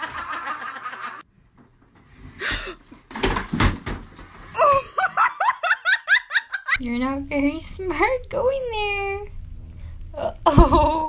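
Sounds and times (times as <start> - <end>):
laughter: 0.0 - 1.2, 4.6 - 6.8.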